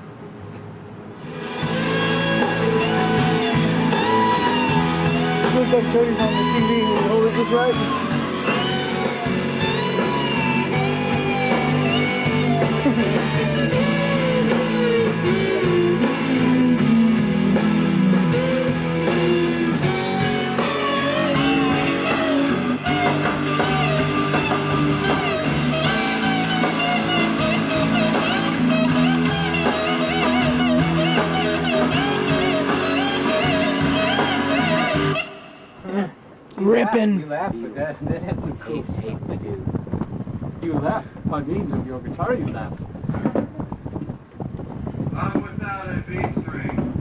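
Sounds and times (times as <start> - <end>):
blues-rock electric guitar lead: 1.2 - 35.9
lower accompaniment: 1.2 - 36.2.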